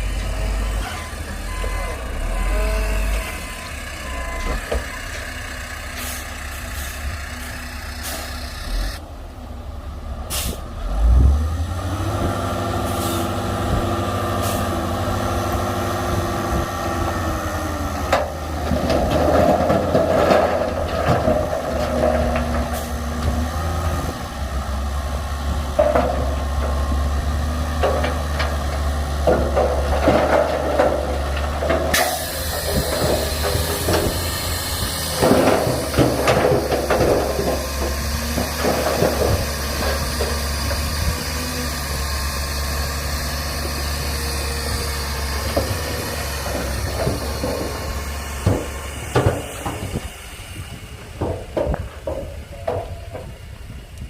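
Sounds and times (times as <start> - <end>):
heavy diesel machinery droning: 0.0 - 54.0
clanks and knocks: 18.0 - 23.7, 25.5 - 41.5, 43.5 - 53.8.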